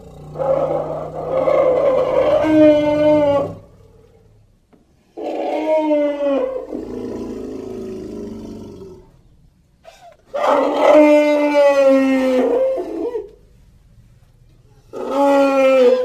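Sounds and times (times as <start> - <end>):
trumpeting creature call: 0.1 - 3.7.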